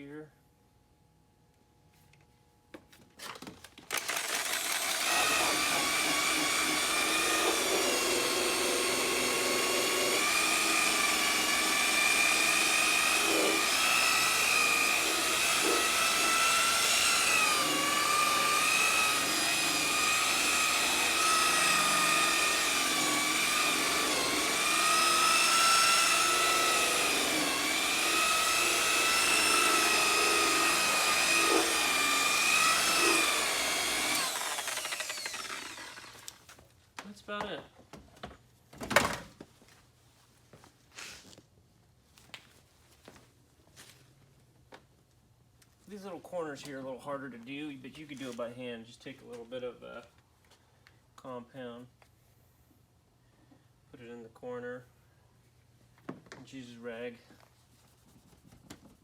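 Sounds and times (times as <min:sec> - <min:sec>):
power tool buffing whine: 0:04.0 - 0:36.4.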